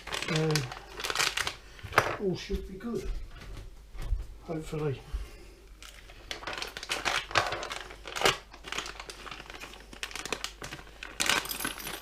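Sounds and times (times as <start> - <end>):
plastic packaging crinkling: 0.0 - 2.3, 5.8 - 12.0.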